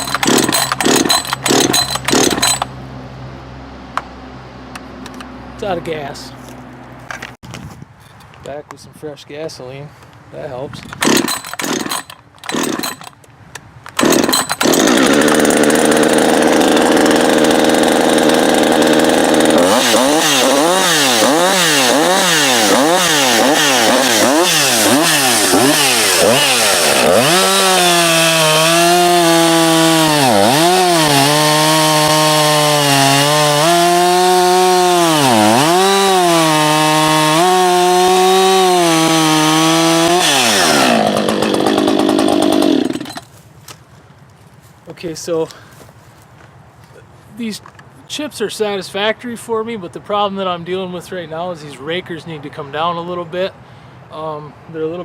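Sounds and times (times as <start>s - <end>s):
chainsaw cutting wood: 0.0s - 2.8s, 11.0s - 13.2s, 13.9s - 43.4s
chainsaw revving: 0.0s - 2.8s, 11.0s - 13.2s, 14.0s - 43.3s.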